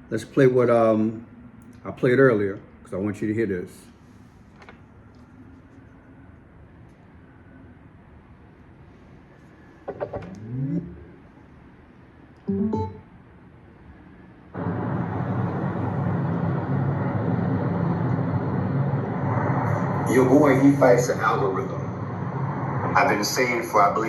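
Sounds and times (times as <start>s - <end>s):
rising pitch sounds: 9.9s - 11.2s, 12.5s - 13.2s
music: 12.5s - 13.0s.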